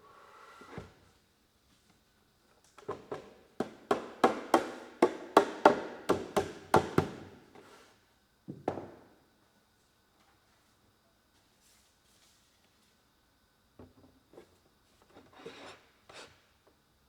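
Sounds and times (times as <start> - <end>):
hammer knocking on wood: 3.0 - 7.3.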